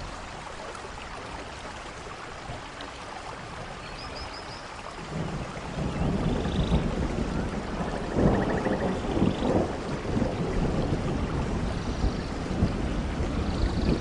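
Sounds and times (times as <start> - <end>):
steady rain: 0.0 - 14.0
low rumbling thunder: 5.0 - 14.0.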